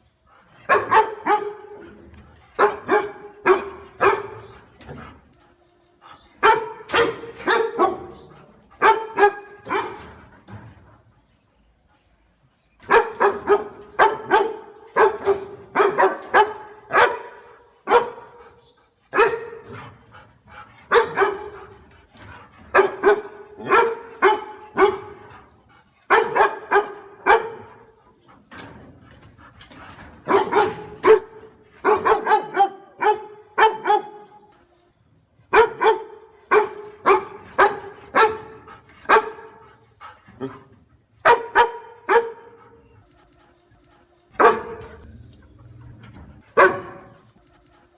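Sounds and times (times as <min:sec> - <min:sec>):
dog barking: 0:00.7 - 0:01.8, 0:02.6 - 0:04.5, 0:06.4 - 0:08.2, 0:08.8 - 0:10.1, 0:12.9 - 0:18.4, 0:19.1 - 0:19.8, 0:20.9 - 0:21.6, 0:22.8 - 0:25.2, 0:26.1 - 0:27.9, 0:30.3 - 0:34.3, 0:35.5 - 0:39.6, 0:41.2 - 0:42.6, 0:44.4 - 0:44.9, 0:46.6 - 0:47.2.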